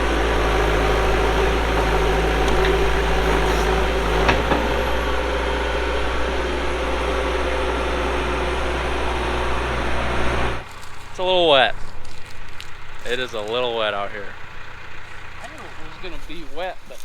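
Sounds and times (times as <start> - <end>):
short knocks: 0.0 - 10.6
diesel engine running: 0.0 - 17.0.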